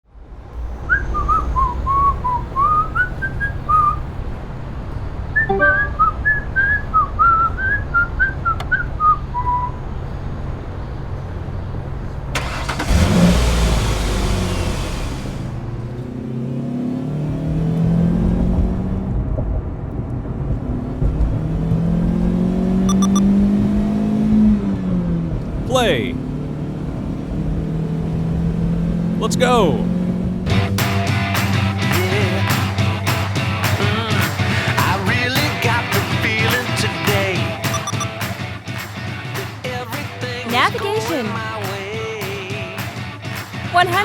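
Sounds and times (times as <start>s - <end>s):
car engine rumbling: 0.3s - 5.4s, 9.0s - 35.4s
high whistled notes: 5.4s - 8.4s, 22.9s - 23.2s, 37.7s - 38.2s.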